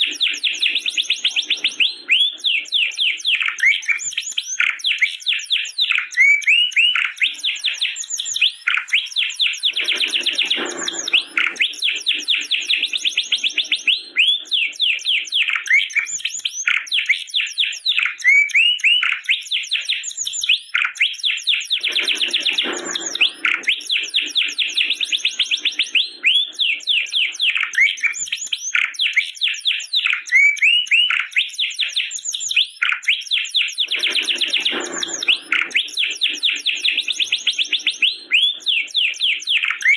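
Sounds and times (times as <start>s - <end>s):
canary singing trills and chirps: 0.0s - 39.9s.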